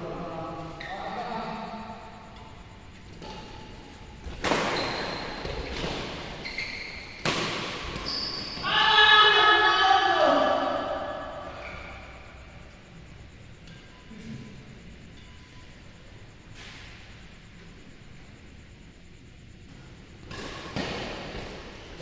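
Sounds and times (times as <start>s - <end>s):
rackets hitting shuttlecock: 7.0s - 8.1s
player shouting: 8.6s - 11.3s.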